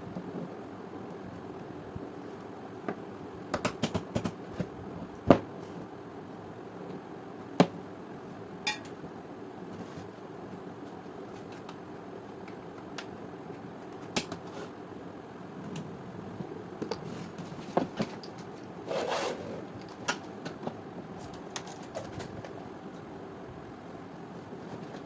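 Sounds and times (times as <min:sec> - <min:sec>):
steady background noise: 0:00.0 - 0:25.0
scraping rustle: 0:17.0 - 0:19.7.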